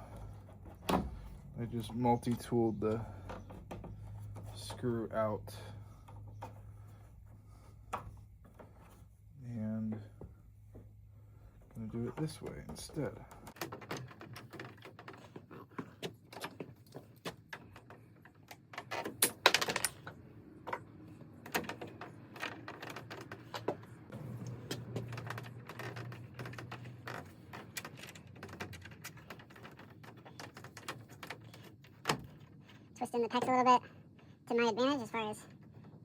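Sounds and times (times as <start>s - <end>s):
pipe fittings and tools rattling: 0.0s - 34.9s.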